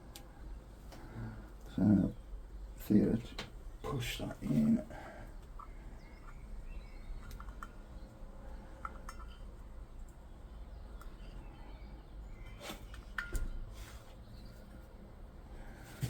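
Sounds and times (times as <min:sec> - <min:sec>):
low steady hum: 0:00.0 - 0:16.0
faint clicks and handling noise: 0:00.1 - 0:01.7, 0:04.6 - 0:11.5.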